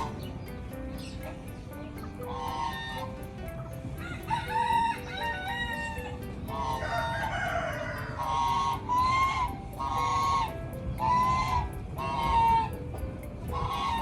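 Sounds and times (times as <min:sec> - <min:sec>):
chickens calling: 0:00.0 - 0:14.0
roosters crowing: 0:04.0 - 0:12.8.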